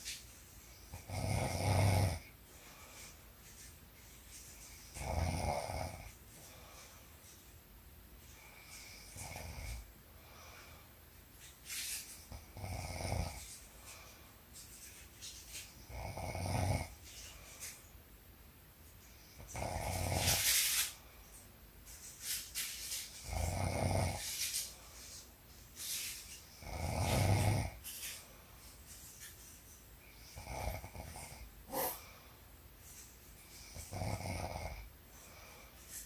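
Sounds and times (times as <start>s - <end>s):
quiet breaths: 0.0s - 36.0s
woman snoring: 0.9s - 2.3s, 5.0s - 6.1s, 15.9s - 17.0s, 19.5s - 20.4s, 23.2s - 24.2s, 26.6s - 27.8s, 33.8s - 34.9s.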